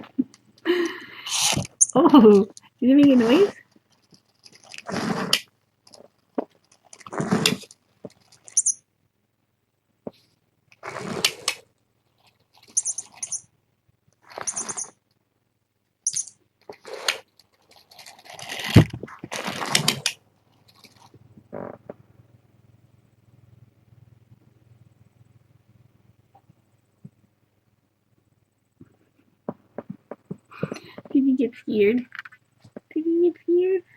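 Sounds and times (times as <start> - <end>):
rustling: 0.0 - 8.8, 10.1 - 13.5, 14.1 - 15.2, 16.0 - 22.0.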